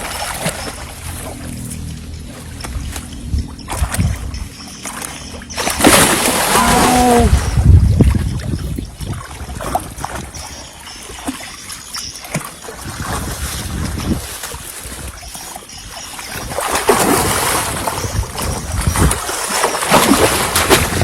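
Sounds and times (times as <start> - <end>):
low rumble: 0.0 - 9.0
water splashing hard: 3.6 - 15.4, 16.1 - 21.0
person shouting: 6.5 - 7.4.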